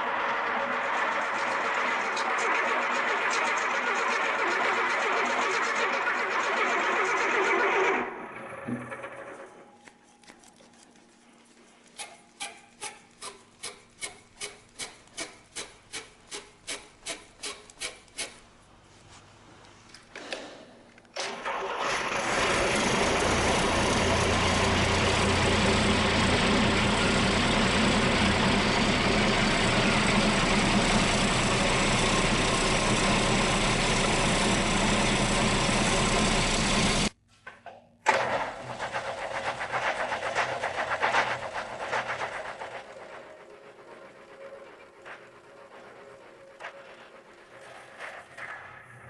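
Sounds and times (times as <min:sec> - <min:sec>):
diesel engine starting and running: 0:00.0 - 0:09.8, 0:21.2 - 0:37.2, 0:38.1 - 0:49.0
quieter uneven running sound: 0:38.7 - 0:48.4.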